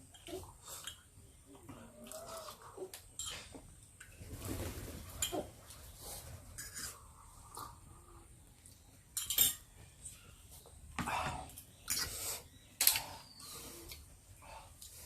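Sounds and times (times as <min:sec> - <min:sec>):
utensils clinking against bowls: 0:09.2 - 0:09.7.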